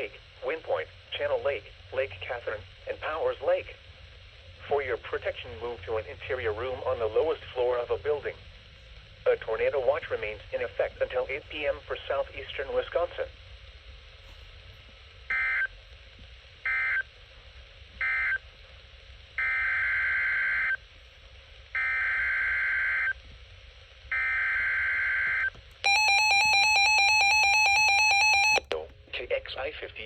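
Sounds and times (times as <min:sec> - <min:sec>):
steady attention tone: 0:25.8 - 0:28.8.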